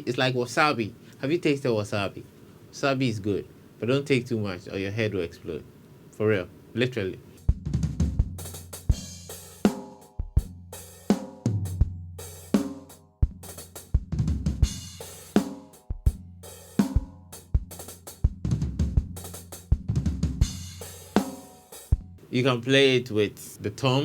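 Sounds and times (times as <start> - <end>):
drum kit playing: 7.4 - 22.7.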